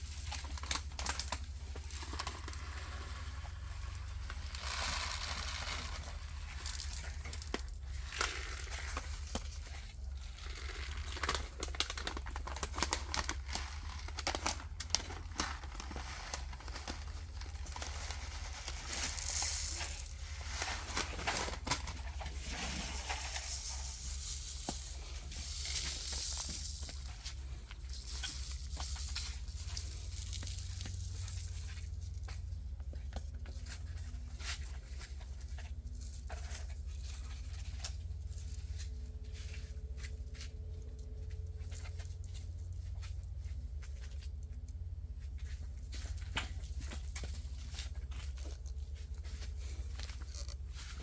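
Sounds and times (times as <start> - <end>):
rustling and crinkling: 0.0 - 51.0
steady low hum: 0.0 - 51.0
small clicks of seeds: 3.9 - 9.5, 17.5 - 21.6, 23.4 - 32.2.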